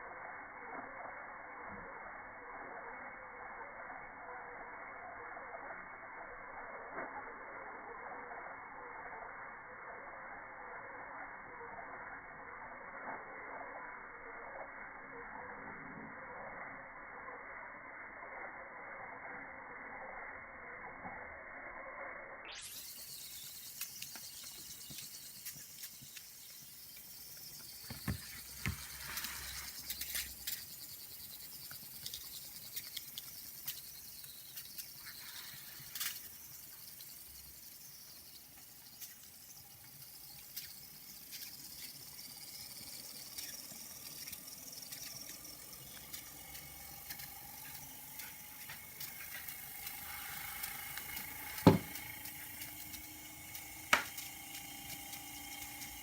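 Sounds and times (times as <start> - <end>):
faint whistle-like tone: 0.0 - 56.0
sputtering crackles and clicks: 22.6 - 56.0
steam hissing: 22.6 - 56.0.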